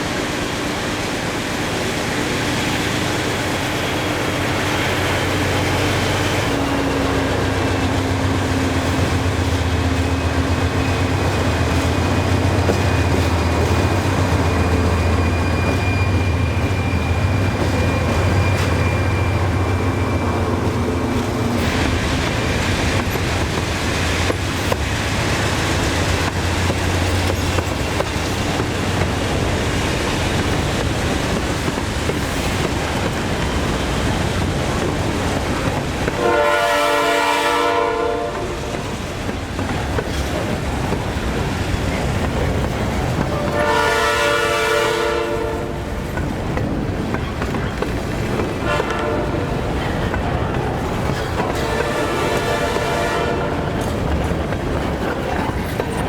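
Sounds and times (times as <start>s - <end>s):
freight train wheels rumbling: 0.0s - 56.0s
locomotive air horn: 36.1s - 38.8s, 43.3s - 45.9s, 48.6s - 49.6s, 51.5s - 53.8s.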